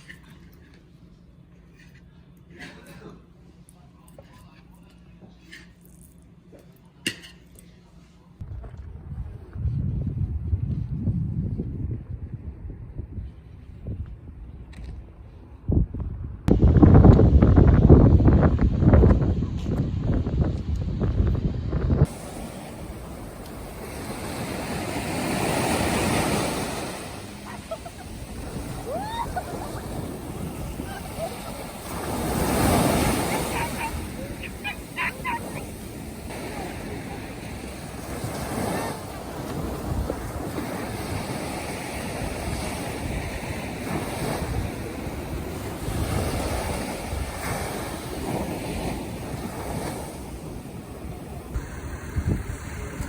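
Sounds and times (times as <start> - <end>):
wind on microphone: 8.4 - 53.0
sea waves breaking on shore: 21.3 - 53.0.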